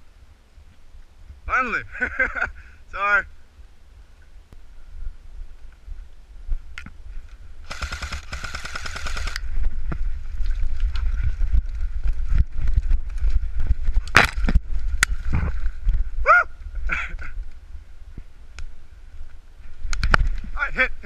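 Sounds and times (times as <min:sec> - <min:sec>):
airsoft rifle firing: 0:07.6 - 0:09.4.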